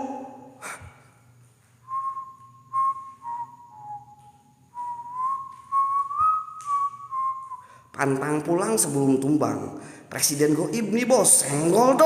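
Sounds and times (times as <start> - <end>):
person whistling a slow tune: 1.8 - 7.9.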